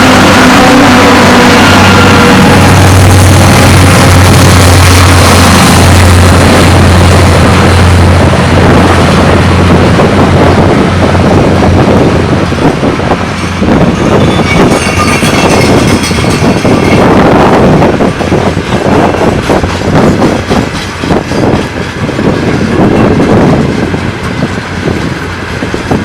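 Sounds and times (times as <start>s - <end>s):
locomotive engine drone: 0.0s - 26.0s
train wheels clattering: 13.1s - 26.0s
wheel squeals: 14.1s - 17.0s.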